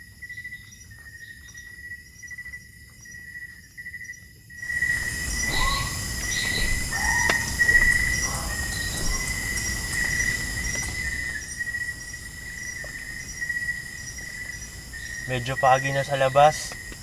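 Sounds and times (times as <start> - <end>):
insects trilling: 0.0 - 17.0
short bird calls: 4.8 - 16.9.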